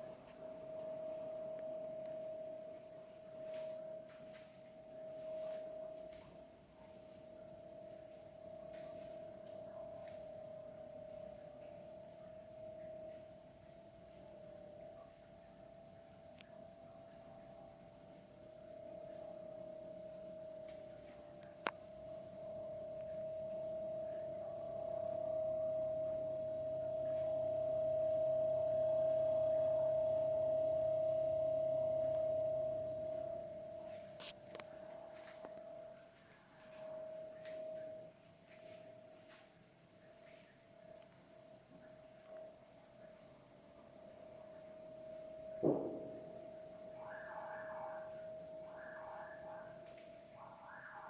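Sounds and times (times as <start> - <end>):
refrigerator high-pitched whine: 0.0 - 39.4, 41.5 - 51.0
refrigerator whine: 18.9 - 35.9.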